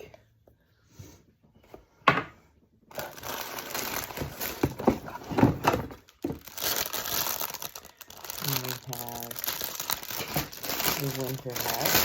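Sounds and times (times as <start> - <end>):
crinkling packaging: 2.9 - 12.0.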